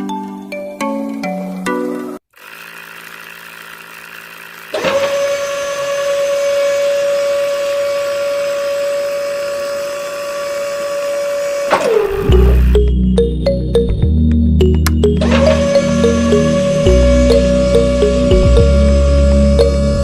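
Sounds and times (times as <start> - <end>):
small electric motor whining: 2.3 - 12.8, 15.2 - 20.0.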